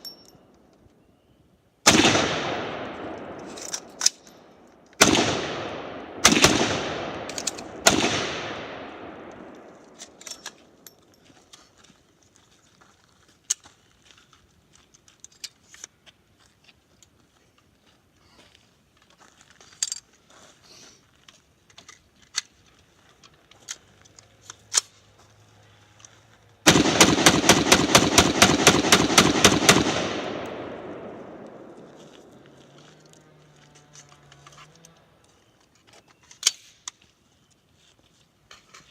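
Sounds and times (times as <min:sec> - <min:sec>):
single gunshots echoing: 0:01.8 - 0:03.9, 0:05.0 - 0:09.8, 0:26.7 - 0:31.8
rapid gunfire: 0:26.7 - 0:30.4.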